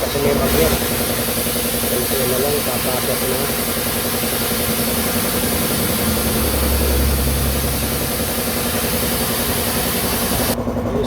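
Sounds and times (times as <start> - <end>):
engine running: 0.0 - 11.0.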